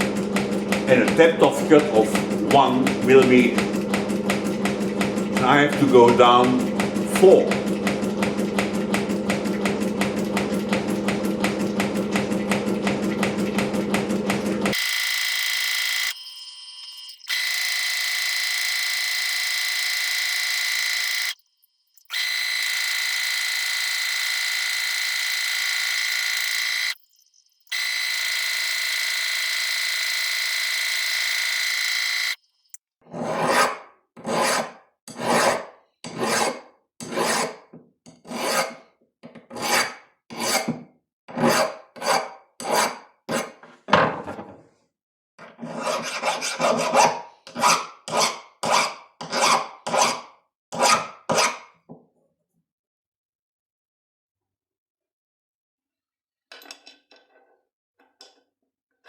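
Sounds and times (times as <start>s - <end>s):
machine whine: 0.0s - 32.8s
hand file rasping on steel: 33.1s - 38.8s, 39.5s - 40.7s, 41.3s - 43.6s, 45.6s - 50.2s.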